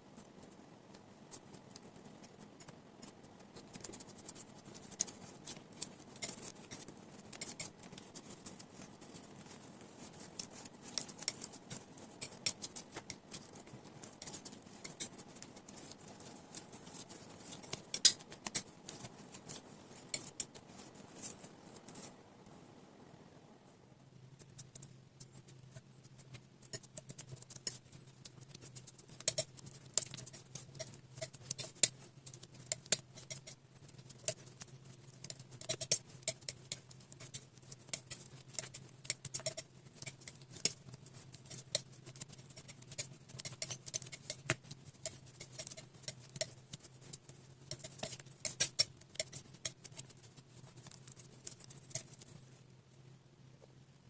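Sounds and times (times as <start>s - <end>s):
faint low hum: 0.0s - 54.0s.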